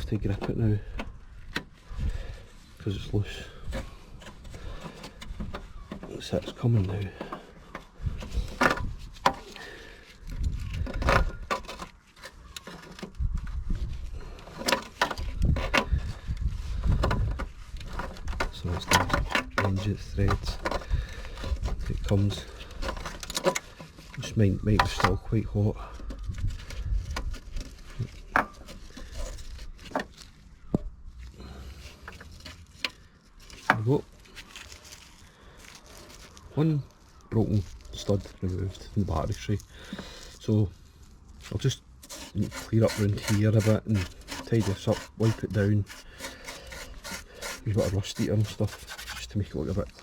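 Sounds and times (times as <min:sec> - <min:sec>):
mole grips clicking on metal: 0:17.9 - 0:25.2.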